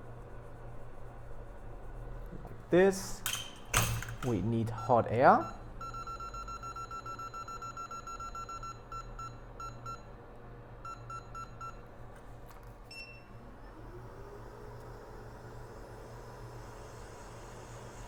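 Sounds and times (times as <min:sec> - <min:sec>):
rapid high-pitched beeps: 0:04.8 - 0:10.0.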